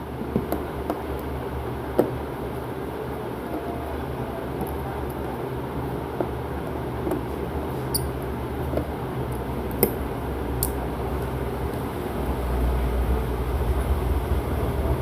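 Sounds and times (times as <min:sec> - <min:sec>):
screwdriver clicking and scraping: 0:07.9 - 0:08.1.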